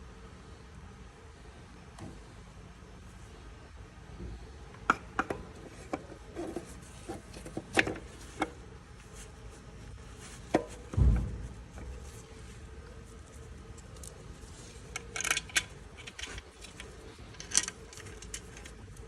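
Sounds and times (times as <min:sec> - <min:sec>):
heavy low thud: 0:10.9 - 0:12.0
tools clicking and knocking: 0:14.9 - 0:19.0.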